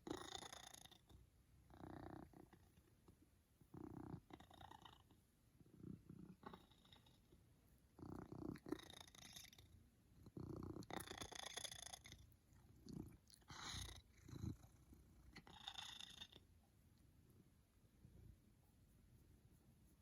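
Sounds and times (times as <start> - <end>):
animal snoring faintly: 8.0 - 16.4.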